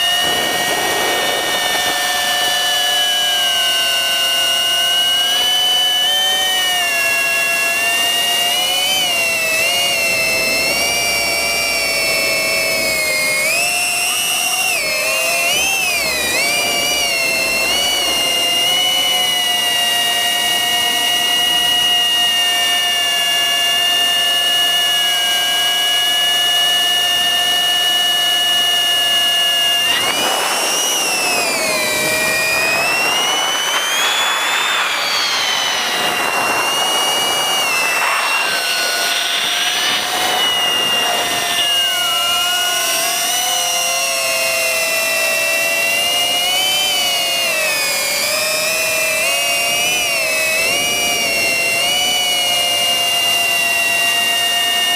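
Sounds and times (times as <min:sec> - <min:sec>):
drone motors whining: 0:00.0 - 0:54.9
rushing air: 0:29.8 - 0:42.5.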